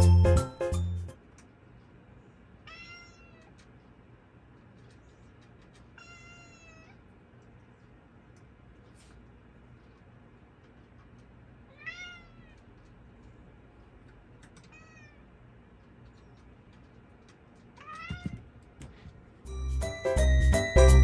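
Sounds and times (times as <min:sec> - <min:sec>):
cat meowing: 0:02.6 - 0:03.6, 0:06.0 - 0:07.0, 0:11.7 - 0:12.6, 0:14.6 - 0:15.3.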